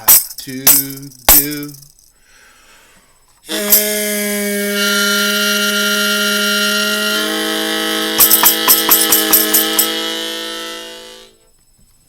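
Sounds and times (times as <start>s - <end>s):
harmonica chord: 3.5s - 11.5s.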